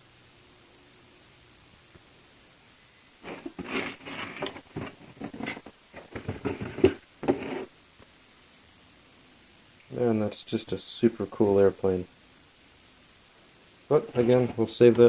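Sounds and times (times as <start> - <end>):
model kit box rustling and clicking: 3.2 - 7.7.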